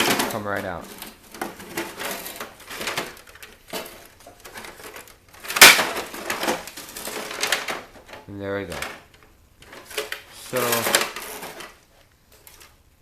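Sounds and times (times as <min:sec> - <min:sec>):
panel scraping and rattling: 0:00.0 - 0:11.8
loud metal clank: 0:05.5 - 0:06.3.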